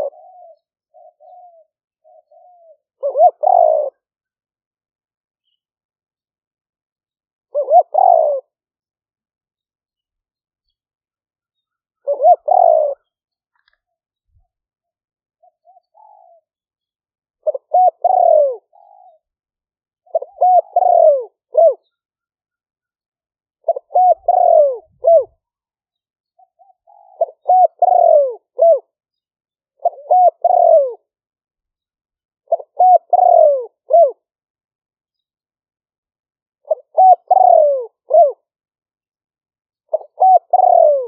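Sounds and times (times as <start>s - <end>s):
dove cooing: 0.0s - 4.1s, 7.5s - 8.6s, 11.6s - 13.2s, 15.4s - 16.6s, 17.4s - 19.3s, 20.0s - 22.0s, 23.6s - 25.4s, 26.4s - 29.0s, 29.8s - 31.1s, 32.5s - 34.3s, 36.6s - 38.5s, 39.9s - 41.0s.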